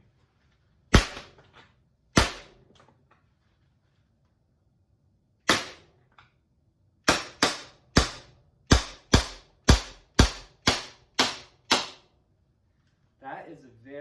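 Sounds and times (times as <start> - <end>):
airsoft pistol shots: 0.9 - 1.4, 2.1 - 2.6, 5.4 - 6.0, 7.0 - 12.1.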